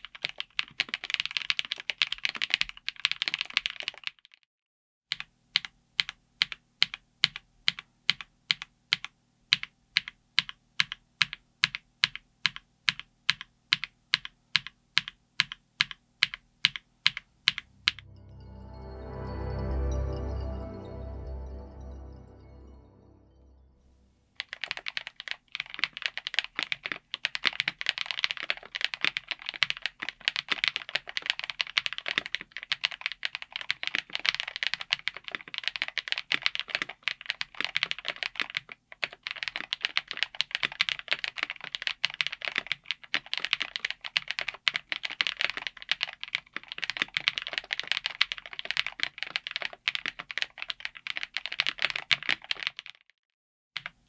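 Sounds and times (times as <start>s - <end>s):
mechanical keyboard typing: 0.0s - 4.4s, 5.1s - 18.0s, 24.4s - 53.0s, 53.8s - 54.0s.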